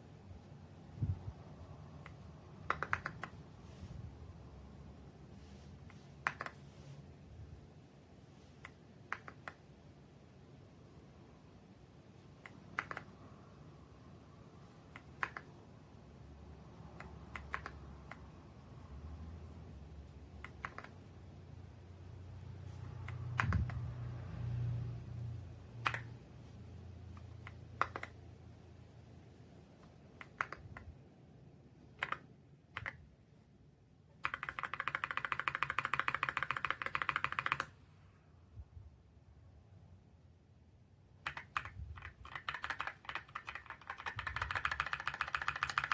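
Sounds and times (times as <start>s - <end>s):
mechanical keyboard keystrokes: 2.0s - 3.4s, 8.6s - 9.6s, 12.4s - 13.2s, 14.9s - 15.6s, 17.0s - 18.3s, 20.4s - 21.0s, 23.1s - 23.9s, 25.8s - 26.2s, 27.2s - 28.2s, 30.2s - 30.9s, 32.0s - 33.0s, 34.2s - 37.8s, 41.2s - 45.9s.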